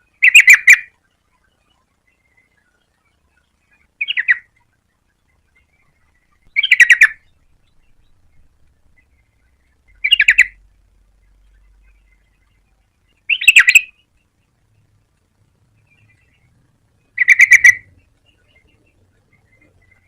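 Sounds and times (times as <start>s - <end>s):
bird chattering call: 0.2s - 0.9s, 4.0s - 4.6s, 5.6s - 10.6s, 11.6s - 14.0s, 17.1s - 20.0s.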